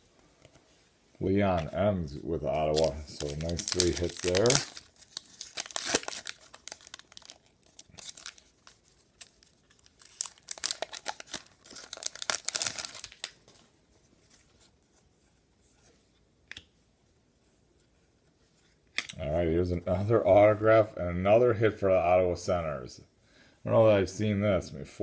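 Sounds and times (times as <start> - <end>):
cards rustling: 2.6 - 14.8
wrapper tearing and crinkling: 2.7 - 13.5.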